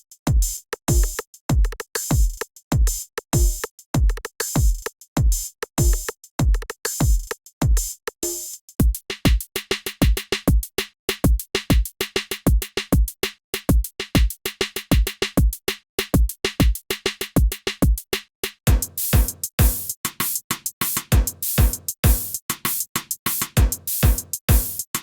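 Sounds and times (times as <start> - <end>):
snare and hi-hat hits: 0.0 - 25.0
drum machine pattern: 0.3 - 25.0
deep kick drums: 18.7 - 19.8, 21.2 - 22.2, 23.6 - 24.7.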